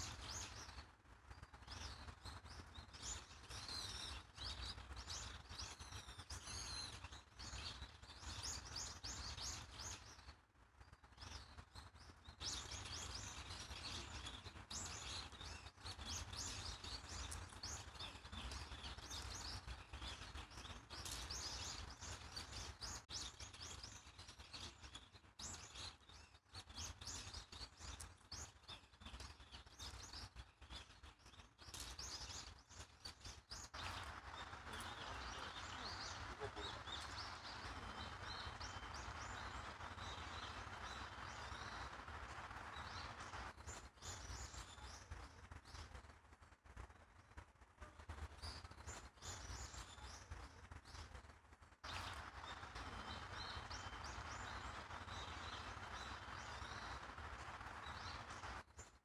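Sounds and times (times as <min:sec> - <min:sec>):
small birds chirping: 0:00.0 - 0:59.0
low outdoor rumble: 0:32.1 - 0:58.8.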